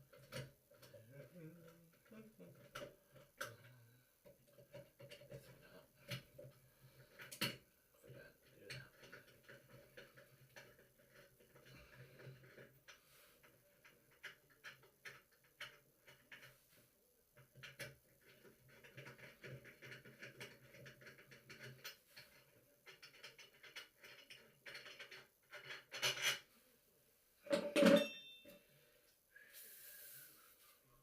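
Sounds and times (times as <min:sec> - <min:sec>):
metal parts clicking and rattling: 0:17.4 - 0:26.5.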